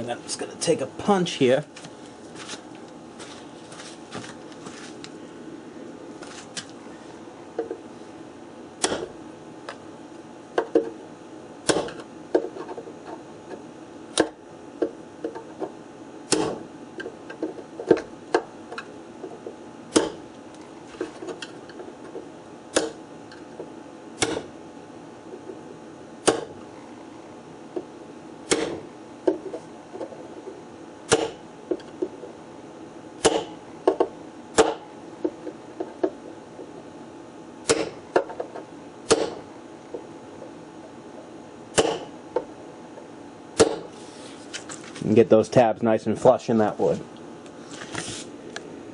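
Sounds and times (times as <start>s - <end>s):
hammer striking a punch: 8.8s - 9.2s, 11.6s - 12.0s, 16.3s - 16.6s, 19.9s - 20.3s, 22.7s - 23.0s, 24.2s - 24.5s, 26.2s - 26.6s, 28.5s - 28.9s, 31.1s - 31.4s, 33.2s - 34.9s, 37.6s - 38.3s, 39.0s - 39.5s, 41.7s - 42.2s, 43.6s - 44.0s.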